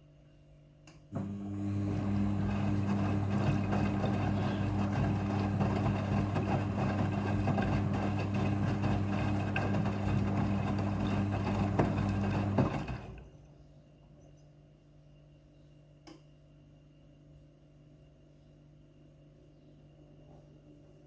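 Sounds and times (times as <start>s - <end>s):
washing machine drain pump humming: 1.2s - 13.3s.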